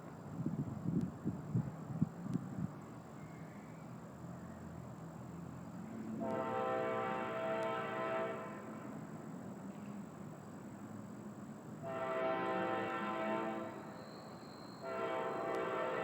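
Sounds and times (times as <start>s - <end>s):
train horn blast: 6.1s - 9.0s, 11.8s - 14.0s, 14.8s - 16.0s.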